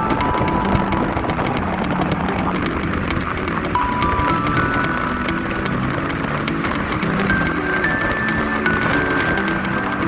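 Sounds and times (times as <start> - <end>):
soft background music: 0.0 - 10.0
wind and road noise in car: 0.0 - 10.0.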